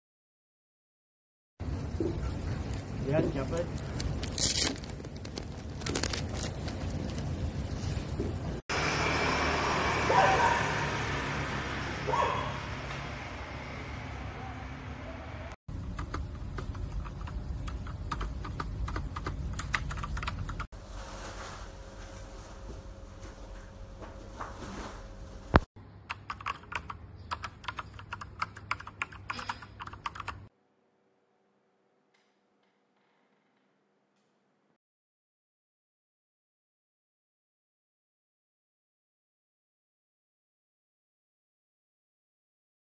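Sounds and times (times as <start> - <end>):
dog barking: 10.1 - 10.8, 12.0 - 12.6.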